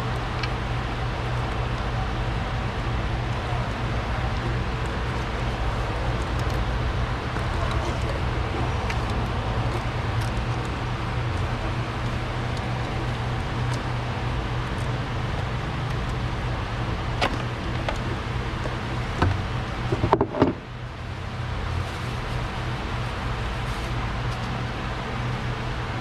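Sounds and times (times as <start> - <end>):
engine running: 0.0 - 26.0
clatter of knocks: 19.2 - 20.6.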